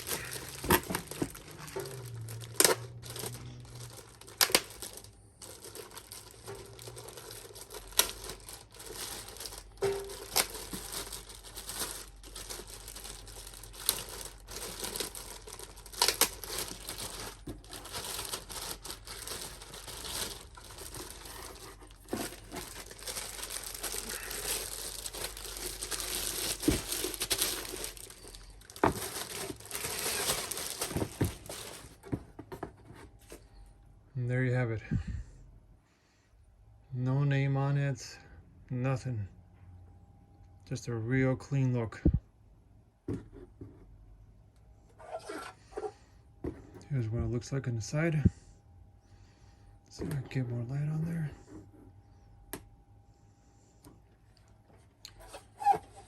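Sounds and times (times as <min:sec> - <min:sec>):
packaging wrap crinkling and tearing: 0:00.0 - 0:32.1.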